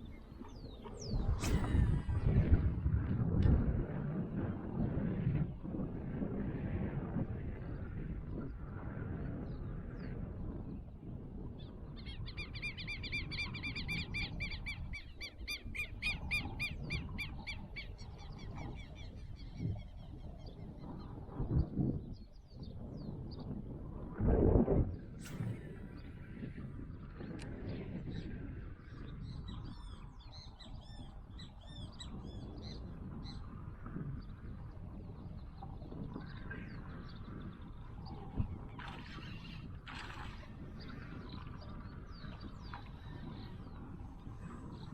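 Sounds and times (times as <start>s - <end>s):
steady low rumble: 0.0s - 7.6s.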